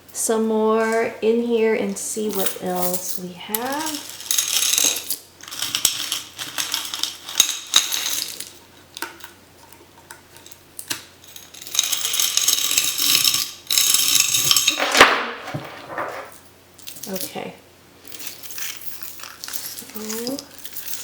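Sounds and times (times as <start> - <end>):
jewelry jingling and clinking: 2.2 - 8.6, 11.2 - 15.0, 15.8 - 17.4, 18.0 - 21.0.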